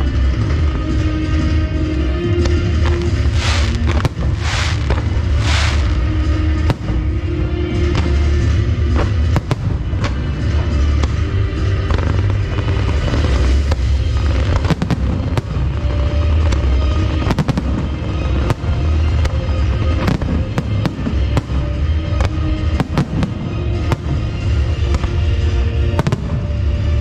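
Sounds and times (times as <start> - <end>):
fireworks bangs and crackles: 0.0 - 27.0
music with heavy bass: 0.0 - 27.0.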